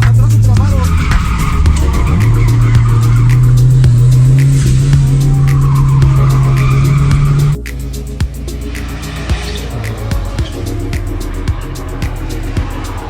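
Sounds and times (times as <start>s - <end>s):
car engine revving hard: 0.0s - 7.6s
tyres squealing: 0.0s - 7.6s.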